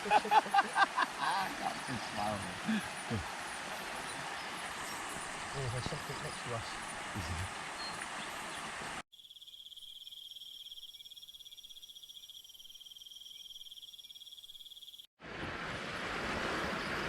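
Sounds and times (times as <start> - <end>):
insects trilling: 0.0 - 8.0, 9.1 - 15.1
steady rushing hiss: 0.0 - 9.0.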